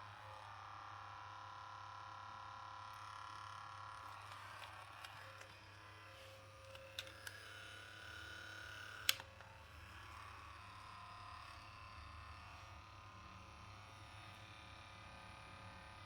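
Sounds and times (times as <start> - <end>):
cassette player plastic clicks: 6.6 - 7.5, 9.0 - 9.5.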